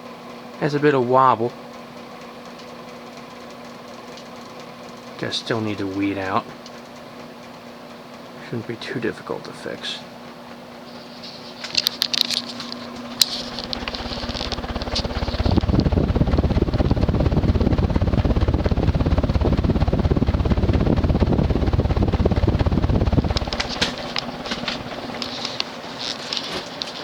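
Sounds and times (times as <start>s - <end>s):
ceiling fan motor humming: 0.0s - 27.0s
heavy low rumble: 13.5s - 25.2s.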